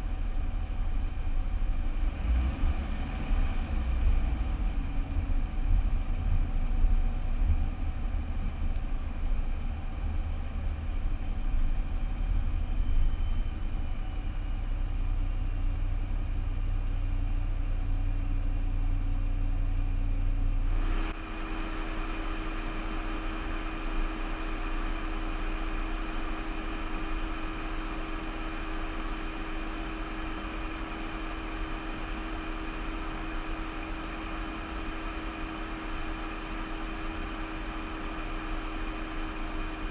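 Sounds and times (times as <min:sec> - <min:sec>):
quiet hum with faint whine: 0:00.0 - 0:39.9
road and engine rumble: 0:00.0 - 0:39.9.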